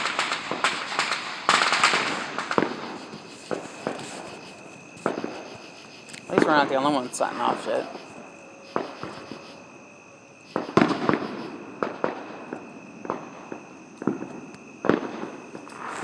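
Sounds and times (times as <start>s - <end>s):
firecrackers popping and banging: 0.0s - 5.5s, 10.5s - 16.0s.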